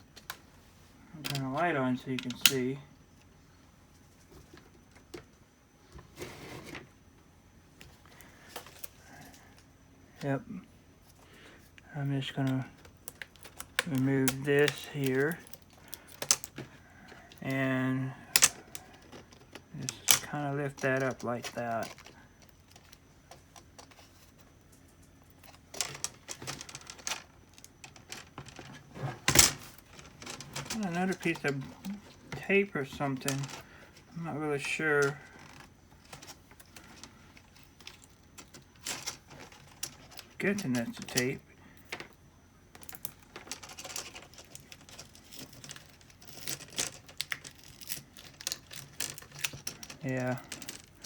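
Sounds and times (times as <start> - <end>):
adhesive tape crinkling: 42.8 - 51.0.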